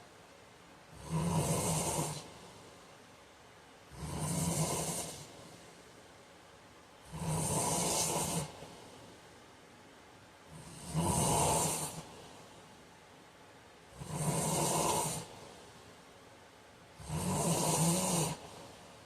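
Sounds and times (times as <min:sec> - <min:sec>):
quiet breathing: 0:00.8 - 0:03.2, 0:03.8 - 0:06.2, 0:06.9 - 0:09.7, 0:10.4 - 0:13.1, 0:13.7 - 0:19.0
man snoring: 0:01.0 - 0:02.3, 0:03.9 - 0:05.3, 0:07.0 - 0:08.7, 0:10.5 - 0:12.2, 0:13.9 - 0:15.4, 0:17.0 - 0:18.8.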